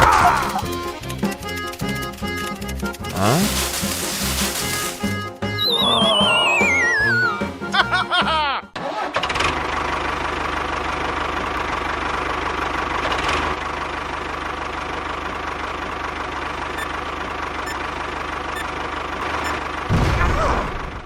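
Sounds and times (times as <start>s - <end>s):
small engine idling: 0.0s - 5.4s, 9.3s - 19.9s.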